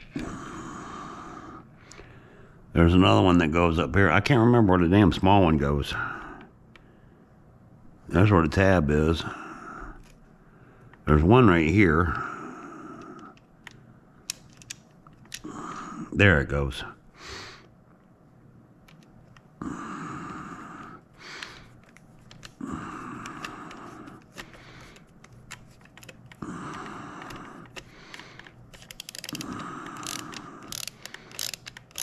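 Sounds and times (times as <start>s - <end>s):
quick clicks: 23.2s - 32.0s
screws driven into plastic: 28.1s - 32.0s.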